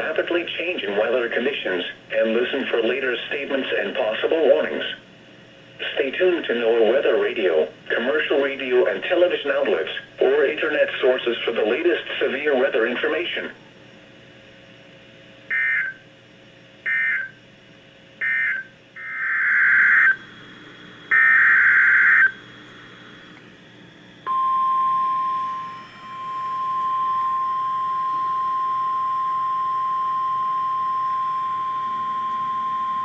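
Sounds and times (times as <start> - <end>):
steady single-pitch alarm tone: 15.5 - 16.1, 16.8 - 17.4, 18.2 - 23.4, 24.2 - 33.0.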